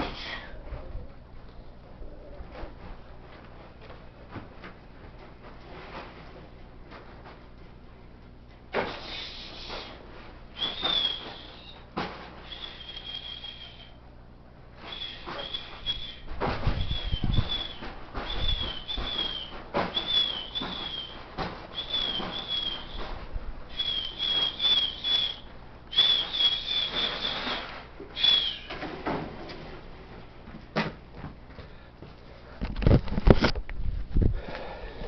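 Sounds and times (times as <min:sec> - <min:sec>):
short high whistled chirps: 0:10.6 - 0:11.8, 0:12.4 - 0:14.0, 0:14.9 - 0:21.2, 0:21.8 - 0:23.1, 0:23.7 - 0:27.6, 0:28.2 - 0:28.7
gusty wind buffeting microphone: 0:16.3 - 0:17.6, 0:32.8 - 0:34.5.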